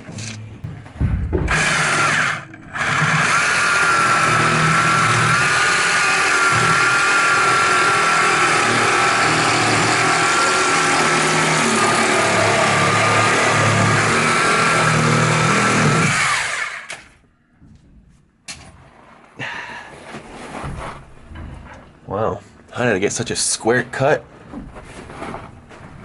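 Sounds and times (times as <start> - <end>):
power tool motor whining: 1.5 - 17.0.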